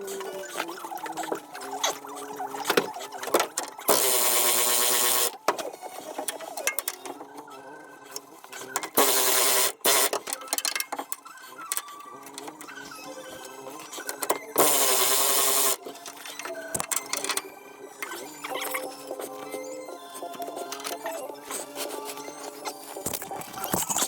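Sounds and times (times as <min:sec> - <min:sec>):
clicks and knocks of work: 0:02.6 - 0:07.3, 0:08.5 - 0:12.6, 0:14.1 - 0:17.5
power tool bursts: 0:03.9 - 0:05.4, 0:09.0 - 0:10.2, 0:14.6 - 0:15.8.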